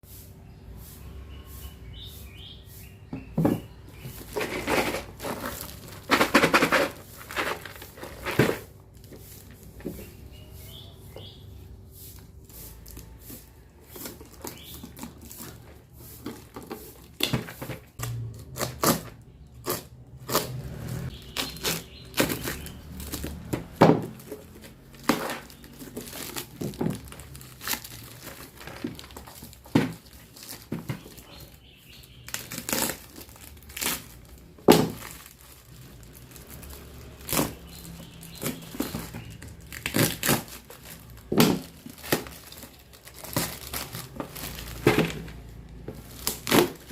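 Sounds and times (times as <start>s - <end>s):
plastic crinkling and rustling: 3.2s - 18.6s, 20.8s - 46.9s.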